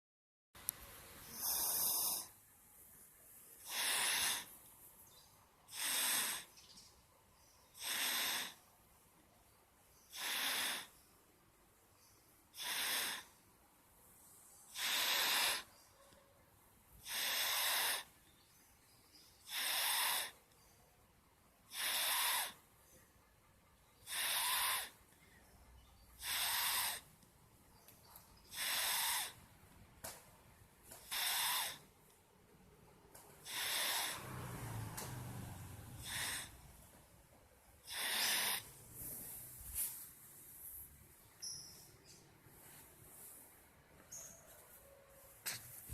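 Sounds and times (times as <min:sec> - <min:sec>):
child snoring: 0:01.3 - 0:02.4, 0:03.6 - 0:04.6, 0:05.7 - 0:06.5, 0:07.7 - 0:08.6, 0:10.1 - 0:11.0, 0:12.6 - 0:13.4, 0:14.7 - 0:15.7, 0:17.0 - 0:18.2, 0:19.4 - 0:20.4, 0:21.7 - 0:22.6, 0:24.0 - 0:25.0, 0:26.2 - 0:27.1, 0:28.5 - 0:29.4, 0:31.0 - 0:31.9, 0:33.4 - 0:36.8, 0:37.8 - 0:39.1.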